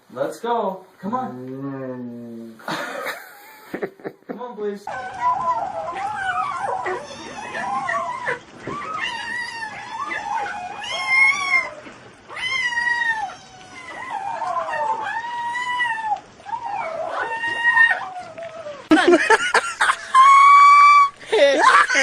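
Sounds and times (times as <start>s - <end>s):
animal howling: 4.9s - 18.9s, 19.9s - 22.0s.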